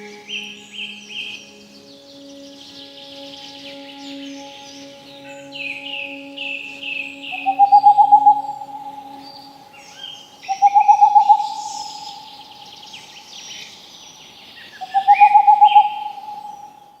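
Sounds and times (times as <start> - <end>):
low quavering bird call: 0.0 - 17.0
small birds chirping and trilling: 0.0 - 17.0.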